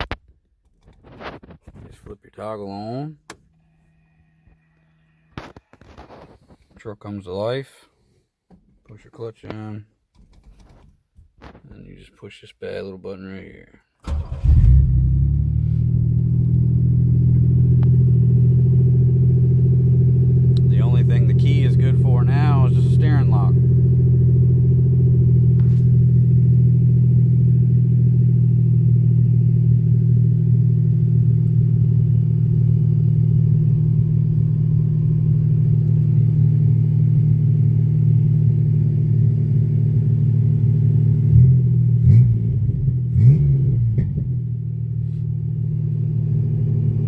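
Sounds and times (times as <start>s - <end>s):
pickup engine idling: 14.2s - 41.1s.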